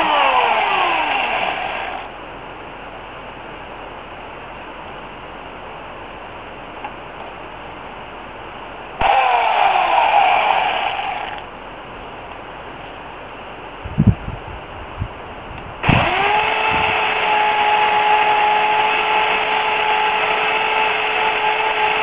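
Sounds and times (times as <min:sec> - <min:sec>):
electric chainsaw motor: 0:00.0 - 0:02.1, 0:09.0 - 0:11.5, 0:15.8 - 0:22.0.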